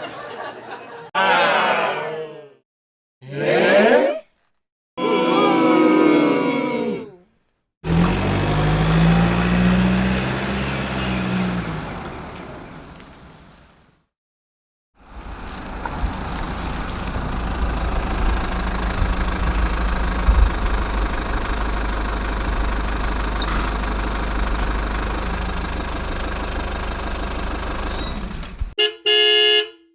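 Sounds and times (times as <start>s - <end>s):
engine running with low rumble: 15.0s - 28.7s.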